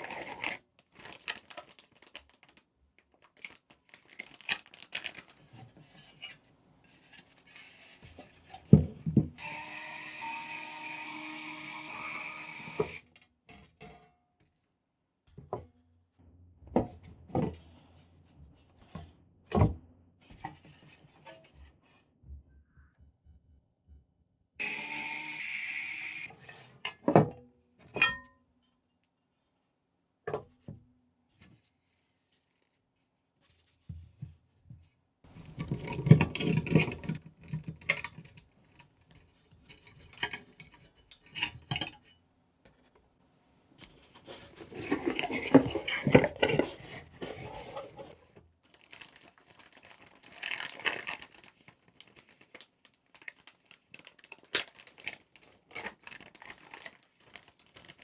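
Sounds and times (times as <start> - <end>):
packaging rustling and tearing: 0.0 - 6.3, 43.8 - 58.0.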